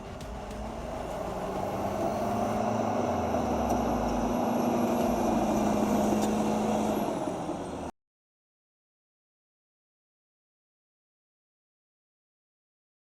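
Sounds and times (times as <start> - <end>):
deep rumble: 0.0 - 7.9
heavy machine engine running: 0.0 - 7.9.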